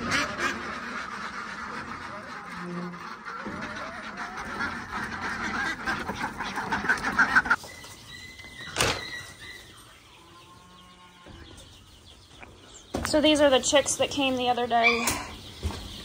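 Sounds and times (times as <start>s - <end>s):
ducks quacking: 0.0s - 11.6s.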